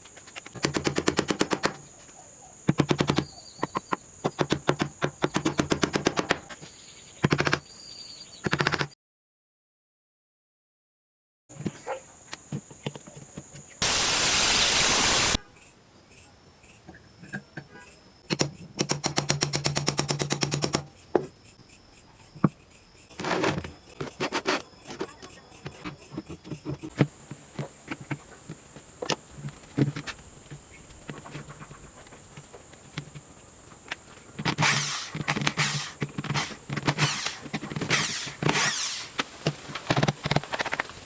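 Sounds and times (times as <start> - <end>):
power tool burst: 13.8 - 15.4, 34.6 - 39.2.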